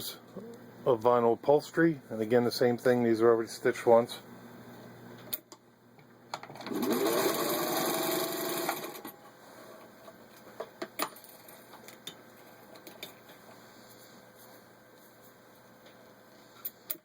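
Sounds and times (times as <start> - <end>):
sewing machine motor running: 6.6 - 9.1.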